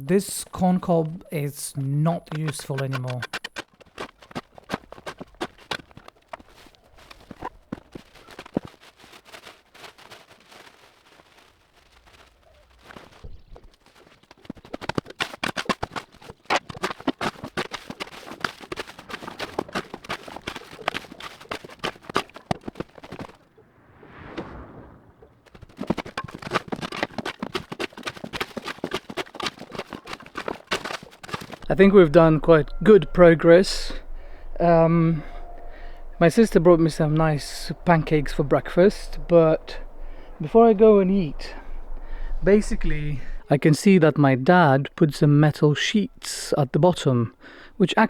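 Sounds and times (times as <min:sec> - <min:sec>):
wood and corn cobs clattering: 0:00.1 - 0:23.4, 0:25.4 - 0:43.9
short whoosh: 0:23.5 - 0:25.6.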